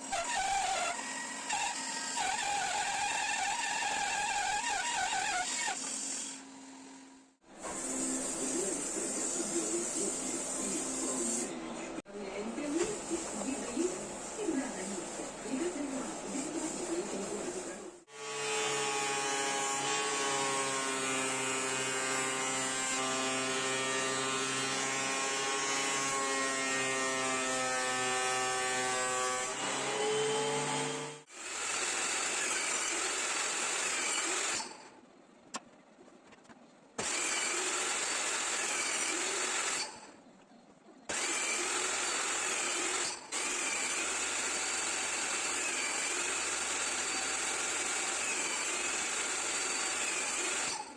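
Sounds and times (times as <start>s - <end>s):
electric power tool on wood: 18.1s - 34.7s, 37.0s - 40.0s, 41.1s - 50.9s.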